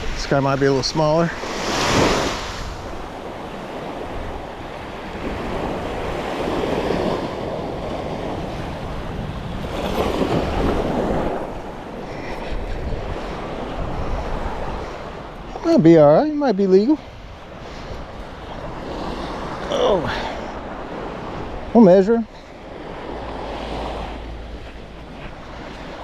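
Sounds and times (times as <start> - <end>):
wind buffeting microphone: 0.0 - 19.7
surf washing on beach: 0.0 - 26.0.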